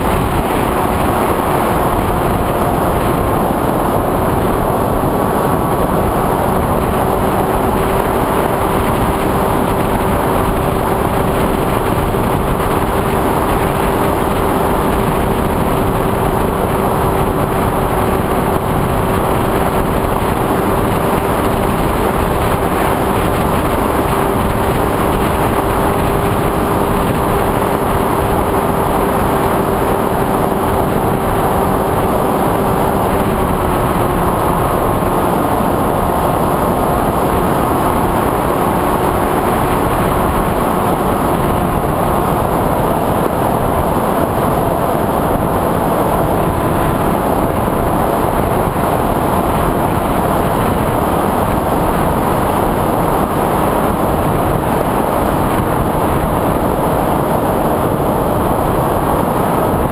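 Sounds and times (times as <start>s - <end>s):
constant rushing noise: 0.0s - 59.9s.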